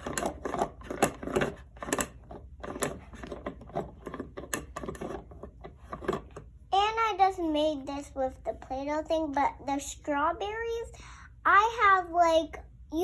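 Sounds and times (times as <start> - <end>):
small objects clicking and tapping: 0.0 - 6.4.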